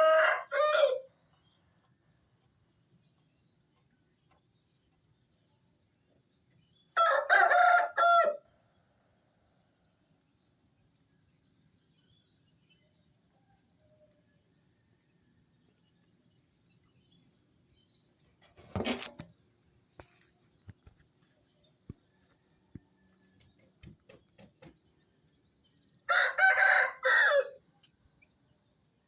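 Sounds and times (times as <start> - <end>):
rooster crowing: 0.0 - 1.1, 7.0 - 8.4, 26.1 - 27.6
crickets chirping: 0.0 - 29.0.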